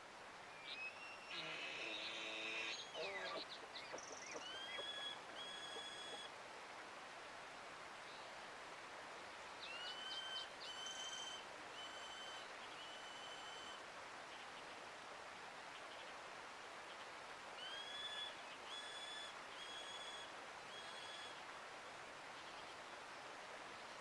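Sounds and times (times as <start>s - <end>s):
flowing river: 0.0s - 24.0s
bird singing: 0.6s - 6.3s.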